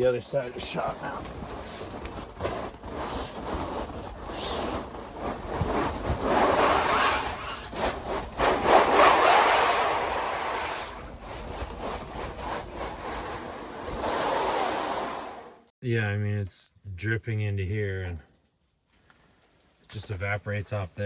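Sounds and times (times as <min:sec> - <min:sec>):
canvas rubbing and scraping: 0:00.0 - 0:15.7.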